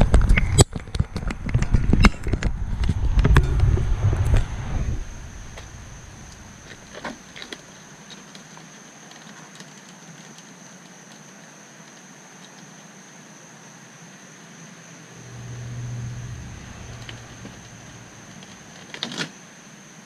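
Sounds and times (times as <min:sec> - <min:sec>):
low hum: 0:00.3 - 0:07.0, 0:15.0 - 0:19.0
faint ticks and handling noise: 0:06.6 - 0:14.2.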